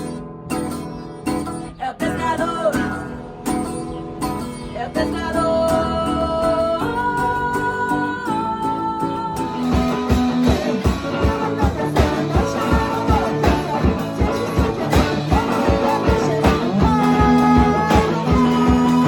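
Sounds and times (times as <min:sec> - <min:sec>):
instrumental rock band: 0:09.4 - 0:19.0.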